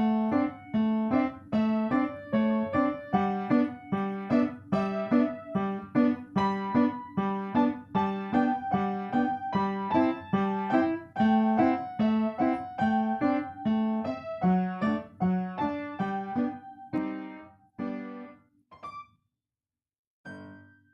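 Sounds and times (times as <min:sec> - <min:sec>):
piano music: 0:00.0 - 0:19.0.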